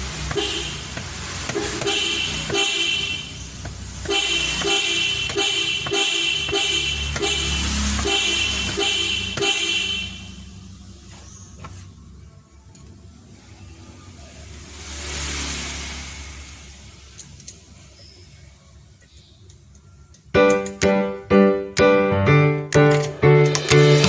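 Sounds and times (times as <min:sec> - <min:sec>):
vehicle horn short honks: 0:00.3 - 0:00.9, 0:01.5 - 0:03.3, 0:04.1 - 0:10.4.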